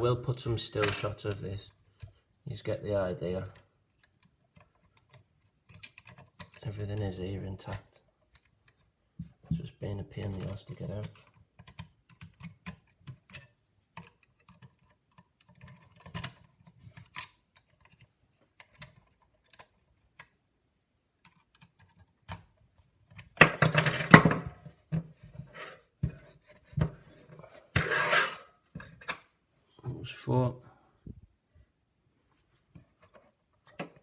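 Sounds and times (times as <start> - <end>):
small metal clicks and scrapes: 3.5 - 6.7, 10.2 - 20.4.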